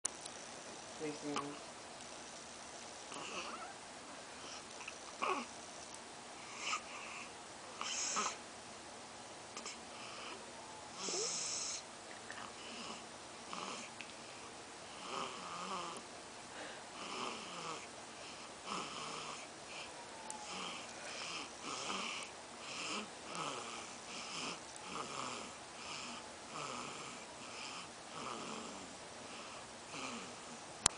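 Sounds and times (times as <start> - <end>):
faint squeaky sounds: 3.1 - 3.8, 19.1 - 22.0
baby snoring wheezily: 7.8 - 8.4, 11.0 - 11.8, 18.7 - 28.8.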